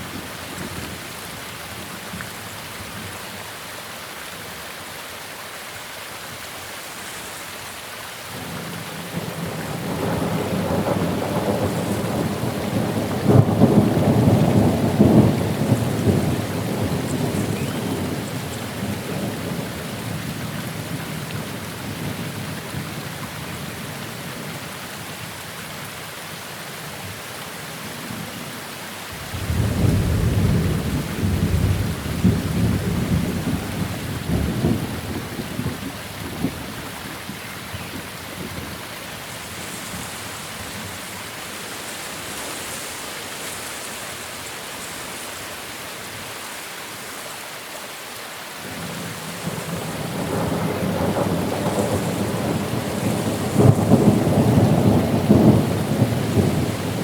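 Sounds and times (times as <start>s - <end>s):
steady rain: 0.0s - 57.0s
thunder rolling: 49.4s - 57.0s.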